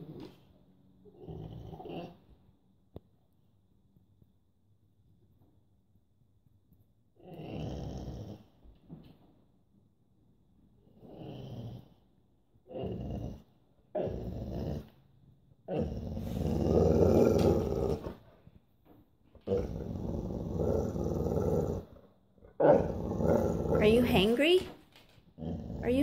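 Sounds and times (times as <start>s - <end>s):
dog growling: 1.0s - 2.4s, 7.2s - 8.6s, 10.9s - 18.3s, 19.4s - 24.7s, 25.3s - 26.0s.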